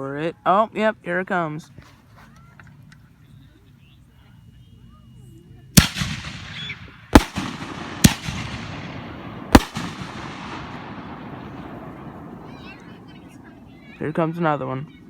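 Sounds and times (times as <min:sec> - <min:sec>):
firework bangs: 0:05.8 - 0:13.8
echoing rumble: 0:05.9 - 0:14.0.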